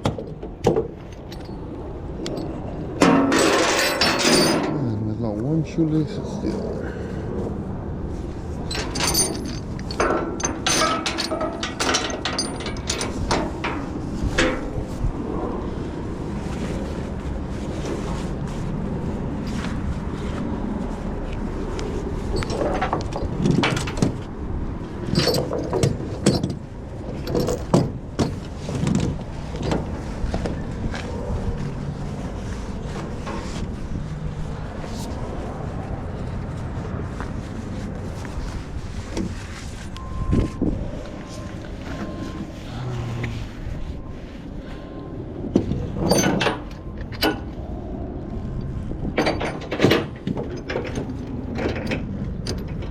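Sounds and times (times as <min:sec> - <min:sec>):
metallic clicks and clanks: 0:02.2 - 0:04.9, 0:08.6 - 0:14.9, 0:25.0 - 0:30.0, 0:49.2 - 0:52.9.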